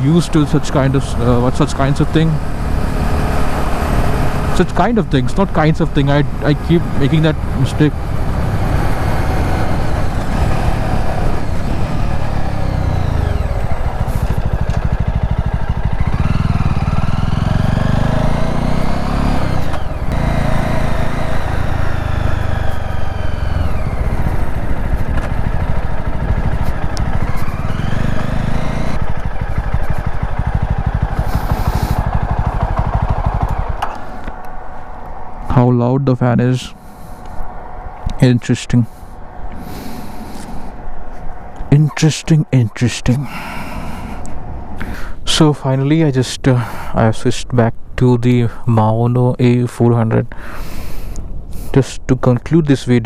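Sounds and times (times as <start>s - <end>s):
motorcycle engine revving: 0.0s - 35.5s.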